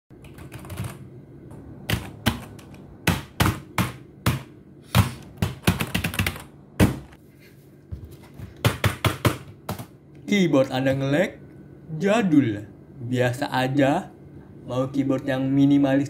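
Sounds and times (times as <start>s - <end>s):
mechanical keyboard keys clacking: 0.2s - 1.0s, 5.4s - 6.5s.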